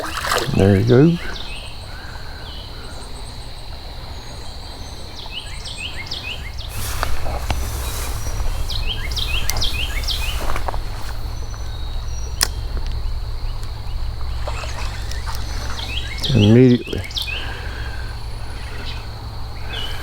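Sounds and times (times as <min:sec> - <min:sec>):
songbird chirping: 0:00.0 - 0:20.0
low rumble: 0:06.3 - 0:16.5
sharp clicks: 0:07.0 - 0:17.4.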